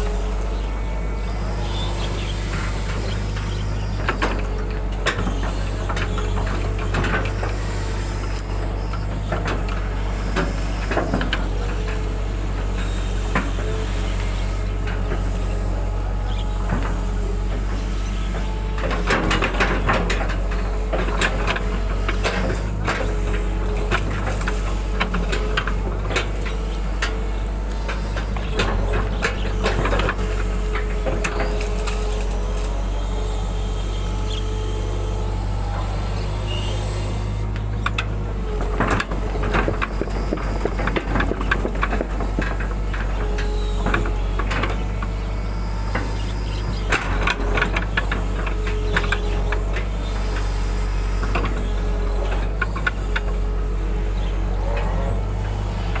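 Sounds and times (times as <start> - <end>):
excavator diesel engine running: 0.0 - 56.0
hydraulic whine: 0.0 - 56.0.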